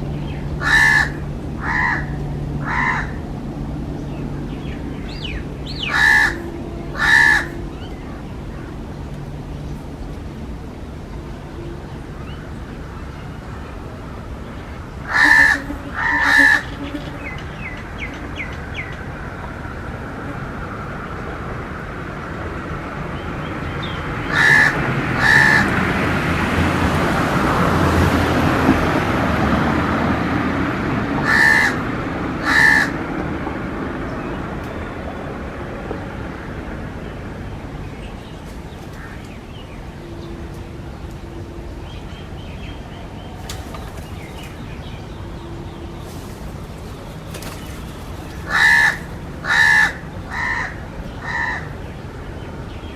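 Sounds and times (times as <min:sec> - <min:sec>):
rushing background noise: 0:00.0 - 0:52.9
crow cawing: 0:00.6 - 0:03.2, 0:05.8 - 0:07.6, 0:15.0 - 0:17.4, 0:24.3 - 0:25.8, 0:31.2 - 0:31.8, 0:32.4 - 0:33.0, 0:48.4 - 0:51.8.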